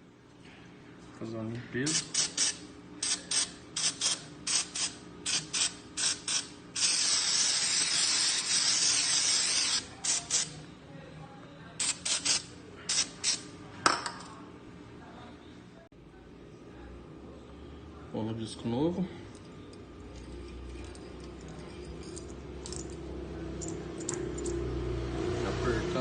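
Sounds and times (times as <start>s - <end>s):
hissing spray: 2.1s - 10.5s.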